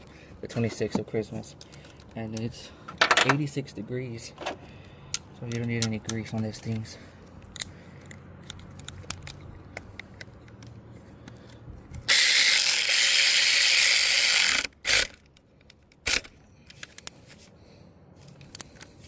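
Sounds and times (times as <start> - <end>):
ratchet wrench clicking: 12.0 - 17.0.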